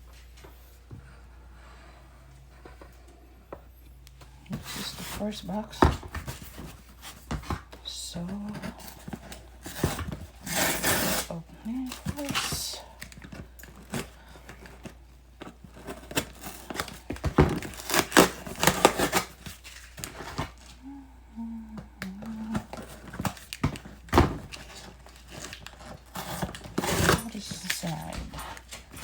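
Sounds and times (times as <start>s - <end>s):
packaging crinkling and tearing: 8.2s - 20.8s, 22.2s - 29.0s.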